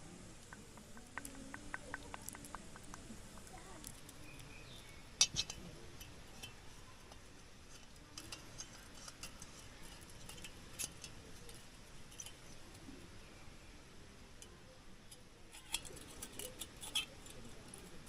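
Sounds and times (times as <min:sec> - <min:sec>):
small hard objects clicking: 0:00.3 - 0:07.2.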